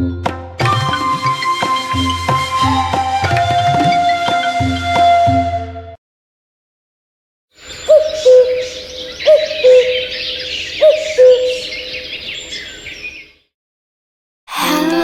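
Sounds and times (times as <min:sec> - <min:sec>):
twittering birdsong: 0:07.6 - 0:13.5.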